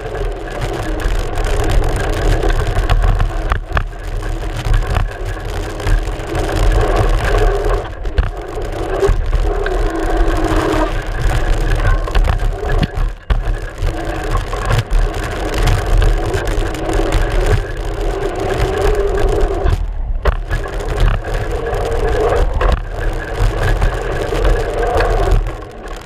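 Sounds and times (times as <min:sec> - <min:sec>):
bike tyre rumbling on dirt: 0:00.0 - 0:26.0.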